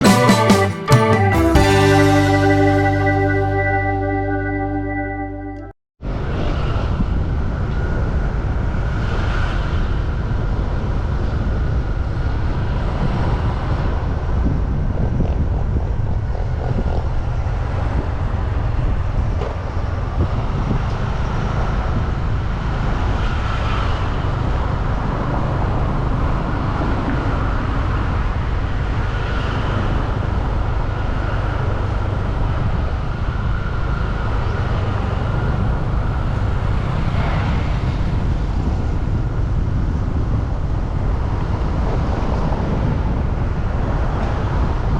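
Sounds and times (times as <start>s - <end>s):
road traffic passing: 0.0s - 5.5s, 19.6s - 39.5s.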